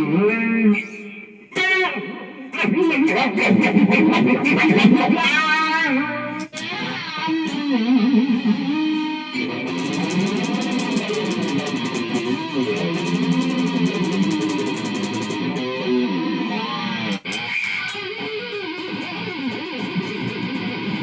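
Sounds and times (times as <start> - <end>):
wavering screeching tones: 4.6 - 21.0
fast ticking: 9.4 - 15.9, 17.1 - 21.0.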